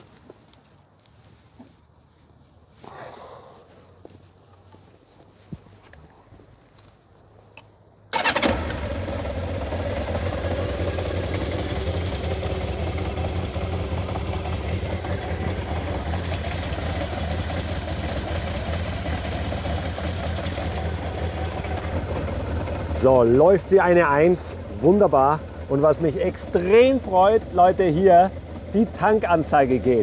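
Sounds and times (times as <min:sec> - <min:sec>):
motorcycle engine starting and idling: 0:08.0 - 0:30.0.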